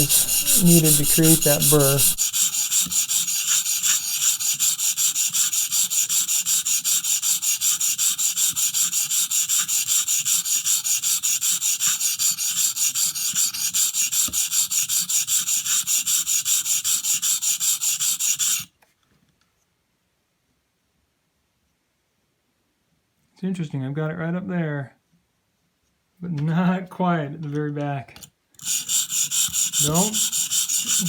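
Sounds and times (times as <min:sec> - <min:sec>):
knife scraping on sharpening stone: 0:00.0 - 0:02.2.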